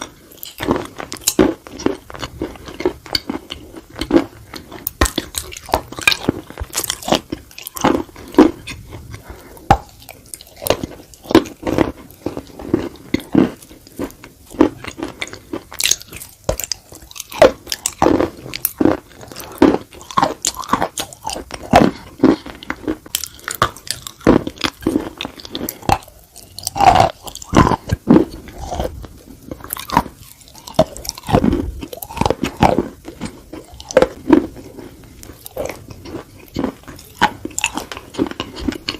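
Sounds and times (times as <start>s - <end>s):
crunchy chewing: 0.0s - 38.9s.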